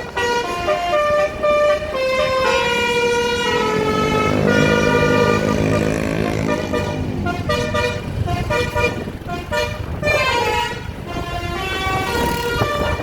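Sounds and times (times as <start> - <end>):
musical bus horn playing a tune: 0.0 - 13.0.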